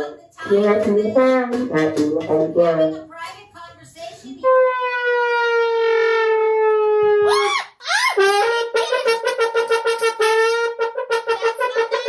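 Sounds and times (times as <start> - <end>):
brass-like horn toots: 4.4 - 7.5, 8.2 - 12.0.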